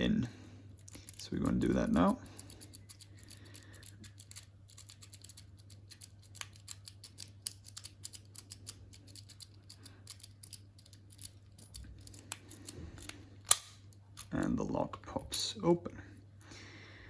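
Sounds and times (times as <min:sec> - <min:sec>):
lock pick clicking and scraping: 0:00.7 - 0:14.4.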